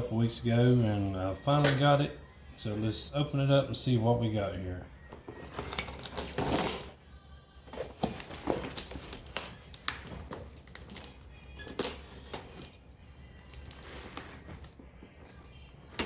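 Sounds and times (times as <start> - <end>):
cardboard package being opened: 5.2 - 7.0, 7.7 - 14.8.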